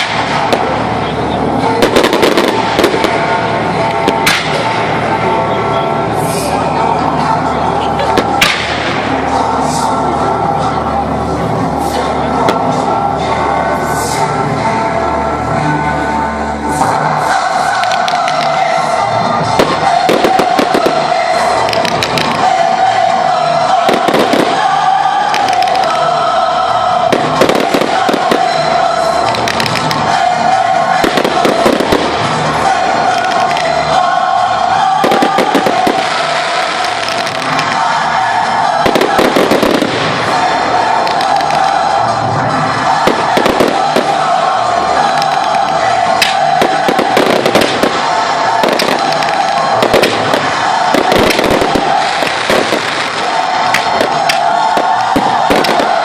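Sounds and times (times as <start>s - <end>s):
fireworks bangs and crackles: 0.0s - 5.3s, 8.0s - 9.3s, 16.8s - 26.3s, 27.0s - 34.1s, 34.8s - 56.0s
background music: 0.0s - 56.0s.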